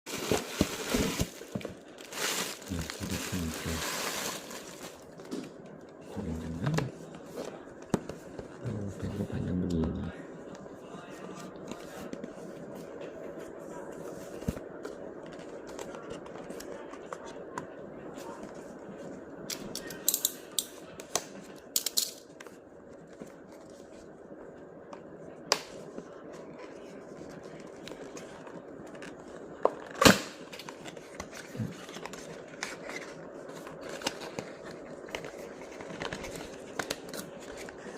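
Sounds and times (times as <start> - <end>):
plastic wrap crinkling: 0.1 - 5.3.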